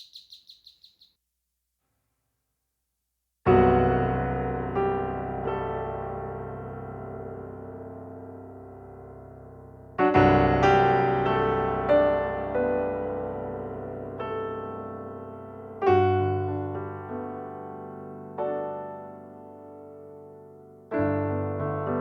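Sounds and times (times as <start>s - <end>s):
slow piano music: 3.5s - 22.0s.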